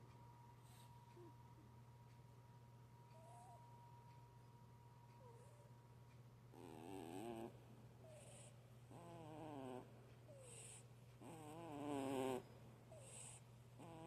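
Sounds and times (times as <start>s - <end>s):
soft breath hiss: 0.0s - 14.0s
cat snoring: 6.5s - 14.0s.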